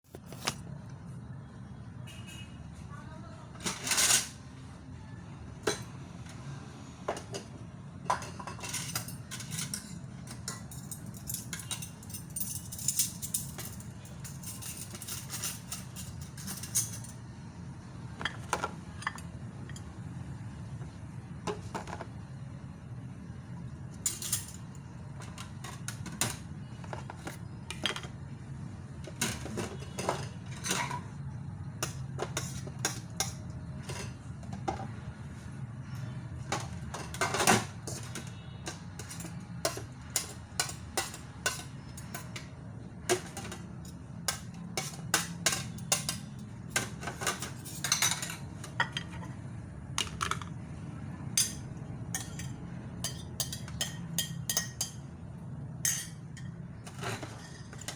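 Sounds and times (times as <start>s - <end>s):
dishes and cutlery clinking: 3.5s - 4.4s, 7.0s - 17.2s, 18.1s - 20.0s, 24.0s - 28.2s, 29.1s - 31.2s, 31.8s - 35.0s, 35.8s - 49.4s, 51.4s - 55.1s, 55.8s - 57.9s
dishes clattering: 7.1s - 17.2s, 18.1s - 19.9s, 24.0s - 28.2s, 29.1s - 31.2s, 36.4s - 49.4s, 52.2s - 55.1s, 55.8s - 57.9s.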